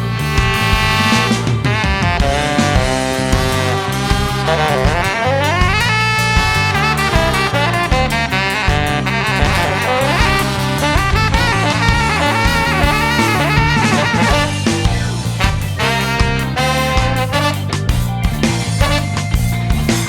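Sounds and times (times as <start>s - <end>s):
horns playing melody: 0.0s - 20.0s
ska band playing: 0.0s - 20.0s.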